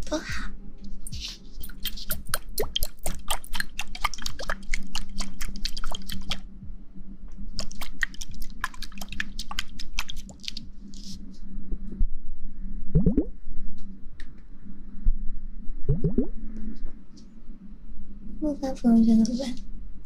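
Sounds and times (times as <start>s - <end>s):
steady low hum: 0.0s - 20.0s
wet squishing and clicking: 1.6s - 6.5s, 7.6s - 11.1s.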